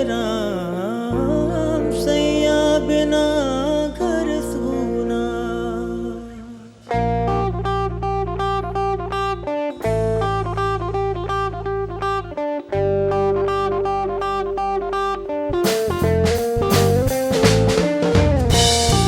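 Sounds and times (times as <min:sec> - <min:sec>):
guitar picking repeating figure: 0:00.0 - 0:19.0
held bass notes: 0:00.0 - 0:19.0
drum kit: 0:15.5 - 0:19.0.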